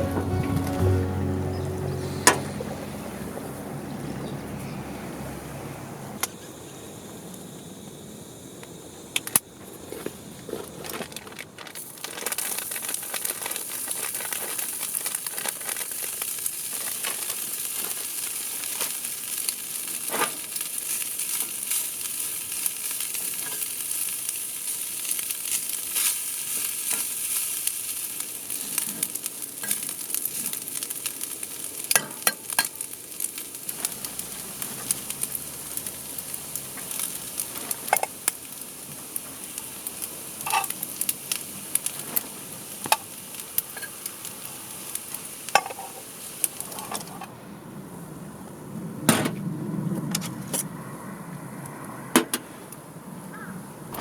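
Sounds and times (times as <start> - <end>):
food sizzling in a pan: 12.3 - 47.2
pan and utensils clicking: 31.9 - 38.4.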